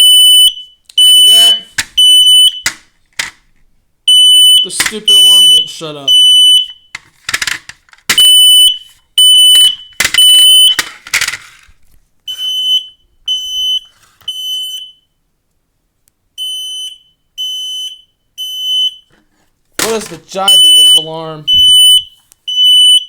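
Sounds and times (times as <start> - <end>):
smoke alarm beeping: 0.0 - 2.8, 4.1 - 7.0, 8.1 - 10.8, 12.3 - 15.2, 16.4 - 19.1, 19.8 - 23.0.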